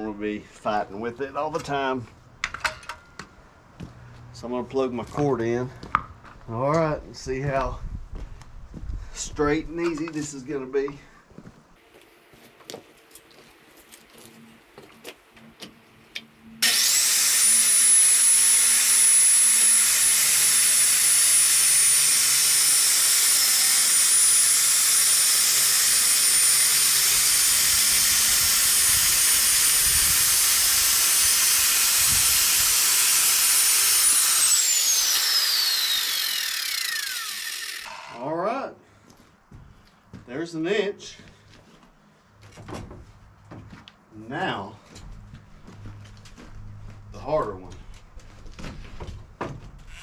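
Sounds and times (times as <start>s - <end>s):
electric power saw whining: 16.2s - 38.3s.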